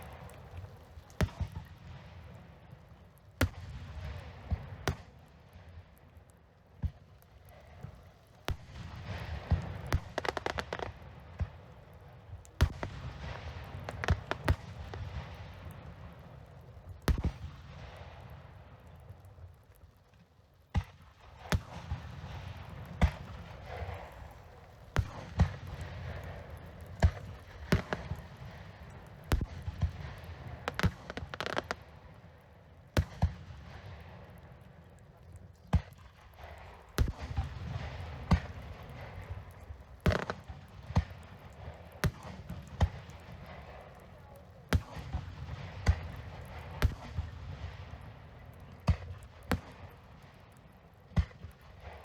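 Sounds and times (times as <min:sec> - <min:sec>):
fireworks crackling: 0:00.0 - 0:52.0
firework bursts banging: 0:08.5 - 0:11.5, 0:12.5 - 0:16.0, 0:21.6 - 0:31.8, 0:37.0 - 0:41.2.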